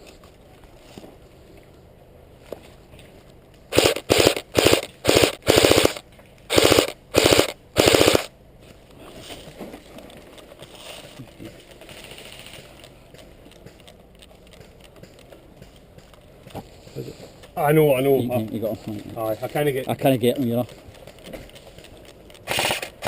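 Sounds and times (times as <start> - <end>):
airsoft gun firing bursts: 3.7 - 8.3, 22.4 - 23.0.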